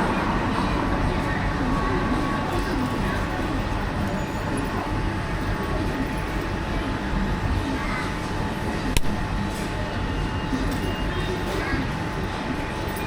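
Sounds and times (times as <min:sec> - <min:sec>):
busy street rumbling din: 0:00.0 - 0:13.0
sharp click: 0:09.0 - 0:09.2.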